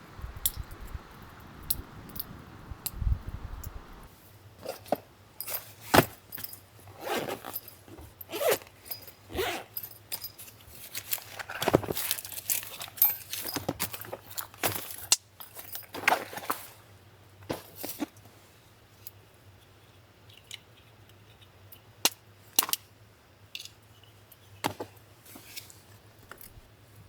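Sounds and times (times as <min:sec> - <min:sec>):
small objects clinking and rustling: 0:07.3 - 0:16.8.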